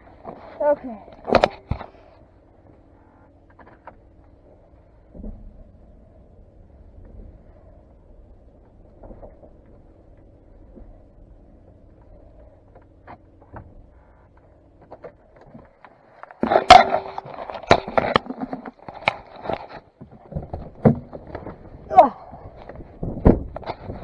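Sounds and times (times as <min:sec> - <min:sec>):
faint steady hum: 0:00.0 - 0:24.0
hard objects knocking and clattering: 0:16.4 - 0:21.7.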